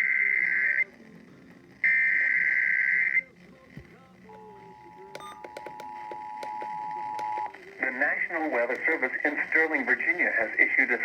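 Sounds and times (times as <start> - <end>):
static clicks: 3.2 - 7.7, 8.6 - 10.0
two-tone attention signal: 4.7 - 7.5.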